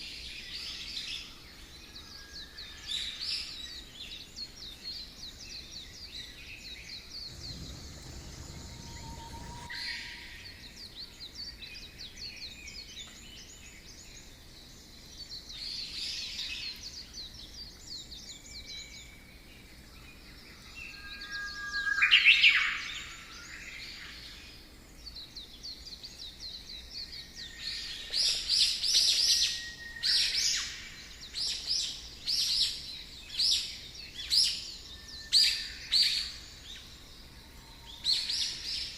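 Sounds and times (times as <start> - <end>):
birds calling and chirping: 7.2 - 10.9.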